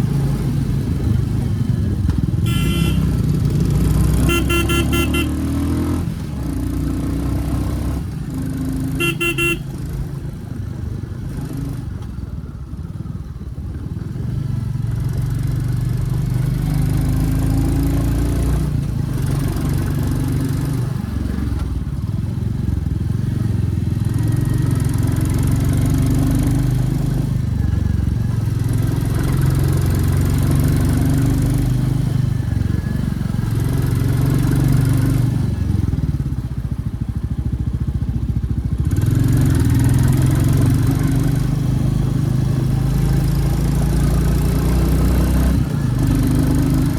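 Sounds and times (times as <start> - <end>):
motorcycle engine revving: 0.0 - 13.0, 13.8 - 46.9
horn toot: 2.4 - 3.2, 4.2 - 5.5, 9.0 - 9.7.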